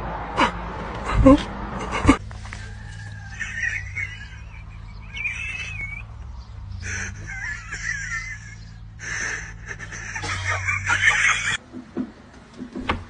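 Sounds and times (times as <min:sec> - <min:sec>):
birds chirping and squawking: 0:01.9 - 0:11.6.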